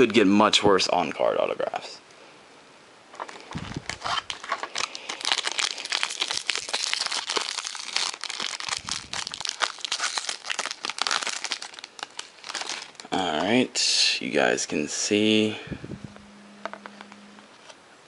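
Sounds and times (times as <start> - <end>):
card pack wrapper crinkling: 3.2 - 13.2.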